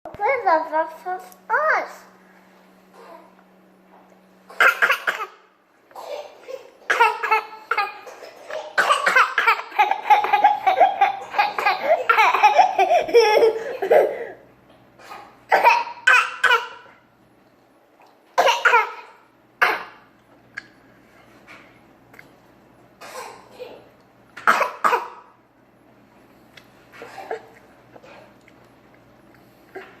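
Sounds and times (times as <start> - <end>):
child coughing: 4.5 - 14.4, 15.0 - 16.8, 18.4 - 20.1, 23.0 - 25.4, 27.0 - 27.5
children giggling and laughing: 9.5 - 14.4.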